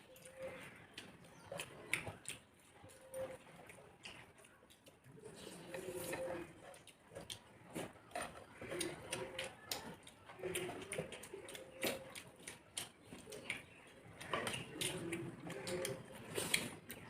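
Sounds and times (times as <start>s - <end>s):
chewing and lip smacking: 0.0s - 17.0s
sharp irregular clicks: 8.4s - 17.0s.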